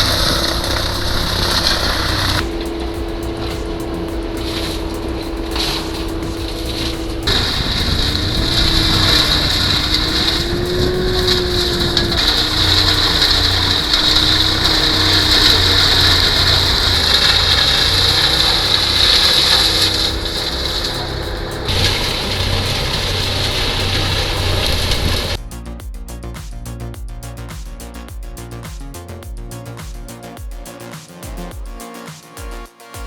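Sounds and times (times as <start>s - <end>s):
wood chipper engine drone: 0.0s - 25.4s
grinding hiss of chipping: 0.0s - 25.6s.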